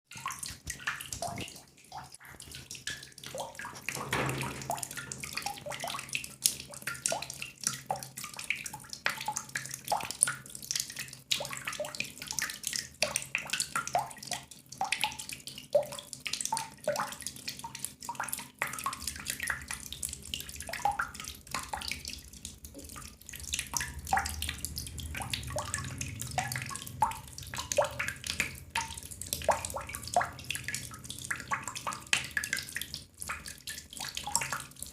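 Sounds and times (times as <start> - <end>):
water drops plinking into water: 0.1 - 34.9
low steady hum: 18.8 - 34.9.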